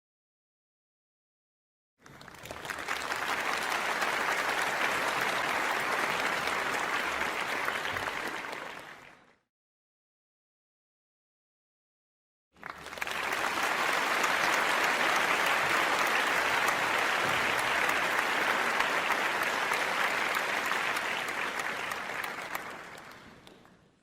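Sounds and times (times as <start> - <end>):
crowd applauding: 2.0 - 9.4, 12.6 - 24.0.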